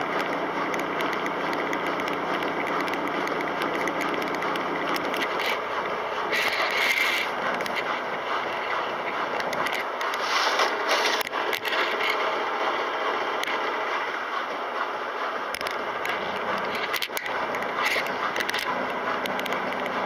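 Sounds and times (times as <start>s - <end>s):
irregular clicks: 0.0s - 12.3s, 15.5s - 20.0s
washing machine churning: 0.0s - 20.0s
scraping: 1.5s - 12.2s.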